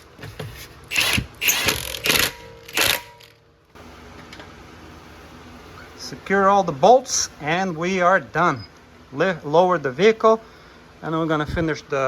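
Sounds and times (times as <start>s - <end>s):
impact wrench hammering: 0.9s - 3.4s.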